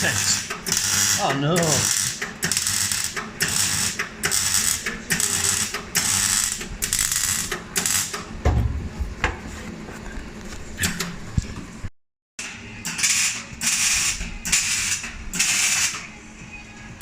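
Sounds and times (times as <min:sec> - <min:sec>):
dull low thump: 0:08.4 - 0:09.4.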